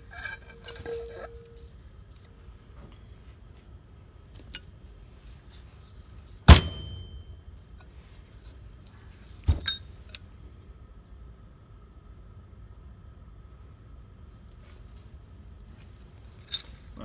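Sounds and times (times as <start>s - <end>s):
metal parts clanking on workbench: 0.1s - 1.6s, 9.5s - 9.8s.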